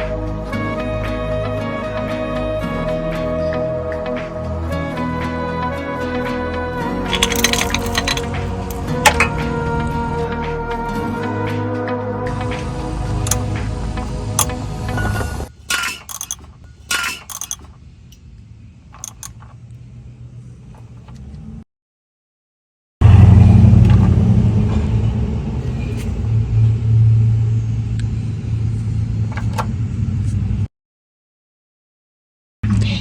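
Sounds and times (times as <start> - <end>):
clicks and clatters: 7.1 - 9.4, 12.4 - 13.5, 15.6 - 17.8, 18.9 - 19.6
diesel engine idling: 12.3 - 18.1.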